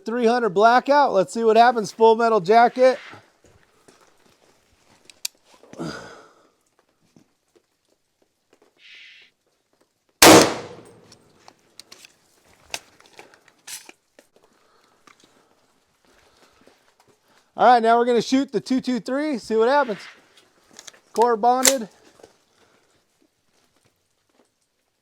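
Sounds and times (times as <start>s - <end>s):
rifle shot with echo: 10.2s - 11.0s.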